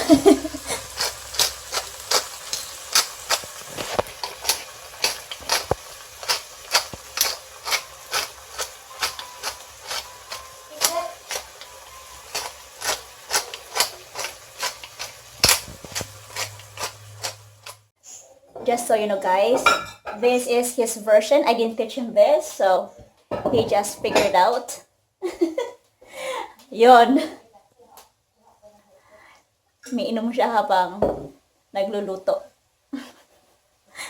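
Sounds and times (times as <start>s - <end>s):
utensil clacking against frying pan: 0.6s - 17.8s.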